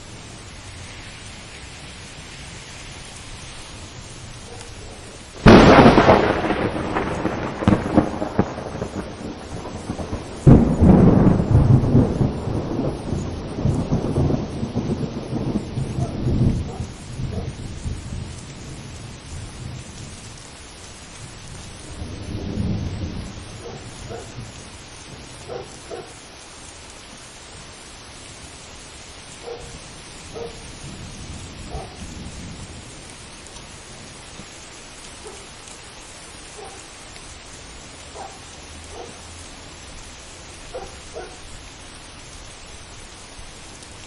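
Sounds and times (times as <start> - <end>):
steady rain: 0.0 - 44.0
thunder clap rumbling: 4.3 - 20.4, 21.2 - 26.3, 29.4 - 35.4.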